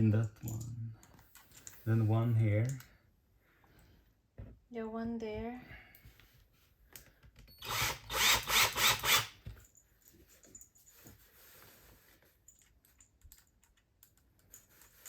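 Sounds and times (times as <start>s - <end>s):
power screwdriver running: 7.6s - 9.4s.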